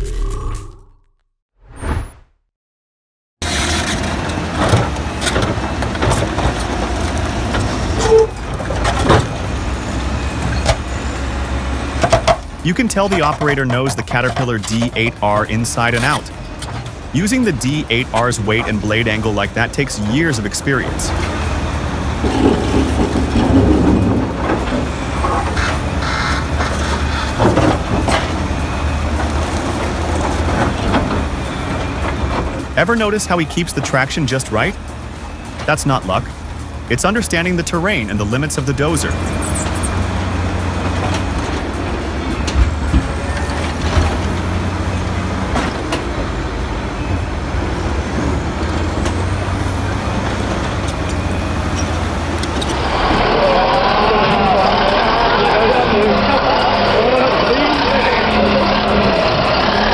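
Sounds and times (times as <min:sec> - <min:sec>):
metallic clanks from tracks: 0:03.4 - 0:17.1, 0:17.9 - 0:35.7, 0:36.3 - 0:59.9
bulldozer diesel engine rumbling: 0:03.4 - 0:59.9.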